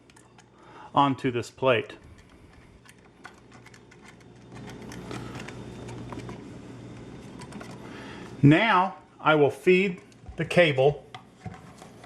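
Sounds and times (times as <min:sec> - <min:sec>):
low steady hum: 0:00.0 - 0:12.0
cable connector clicking and scraping: 0:02.0 - 0:07.8.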